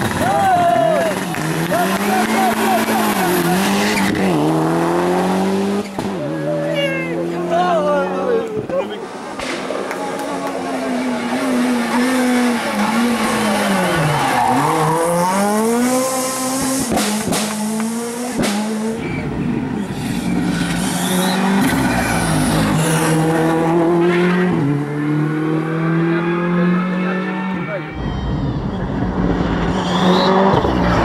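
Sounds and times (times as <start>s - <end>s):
rally car engine revving: 0.0s - 31.0s.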